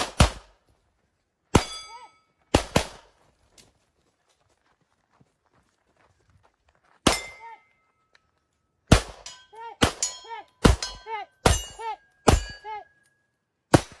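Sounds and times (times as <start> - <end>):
rifle shots: 0.0 - 0.5, 2.6 - 3.1, 8.9 - 11.7, 13.7 - 14.0.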